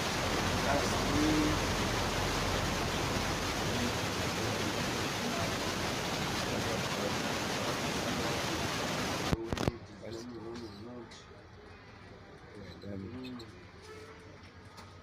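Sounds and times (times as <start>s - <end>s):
static hiss: 0.0s - 9.8s.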